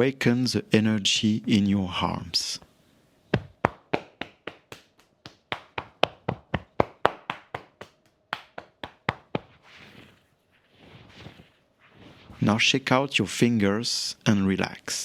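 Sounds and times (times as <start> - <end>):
light hand claps: 3.4 - 9.6.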